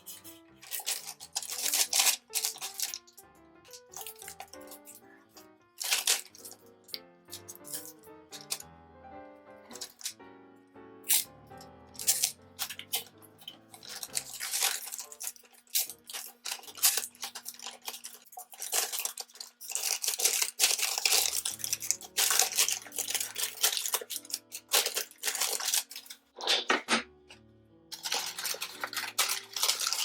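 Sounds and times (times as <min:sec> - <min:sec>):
tape and paper tearing and crinkling: 0:00.0 - 0:08.7, 0:09.7 - 0:10.2, 0:11.0 - 0:27.0, 0:27.9 - 0:30.0
quiet keyboard background music: 0:00.0 - 0:30.0.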